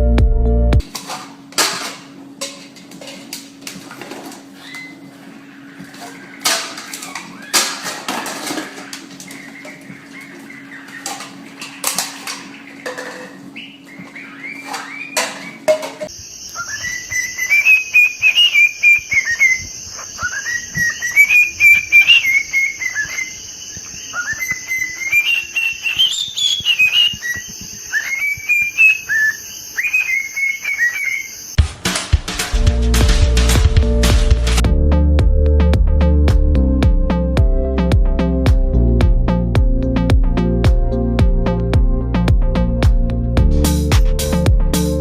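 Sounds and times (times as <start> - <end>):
parrot whistling: 16.5 - 19.6, 20.2 - 31.4.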